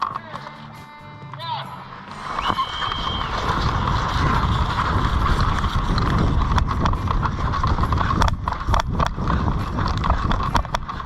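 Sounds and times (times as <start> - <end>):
sharp clicks and cracks: 0.0 - 0.7, 2.1 - 11.0
running footsteps: 0.0 - 11.0
gear jostling: 2.1 - 11.0.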